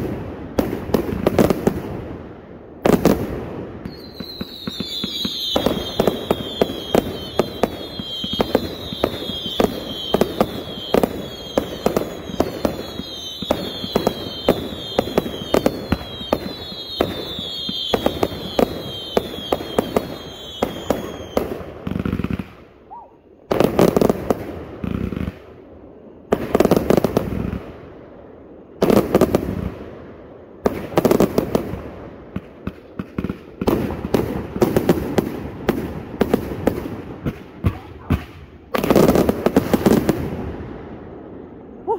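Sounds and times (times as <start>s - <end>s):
whistling firework shots: 2.8s - 29.8s
firework pops and crackle: 2.9s - 22.5s.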